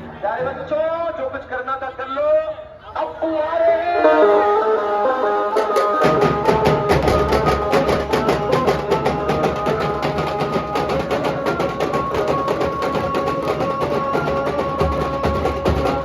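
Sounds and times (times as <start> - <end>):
fast dhol drumming: 5.6 - 16.0.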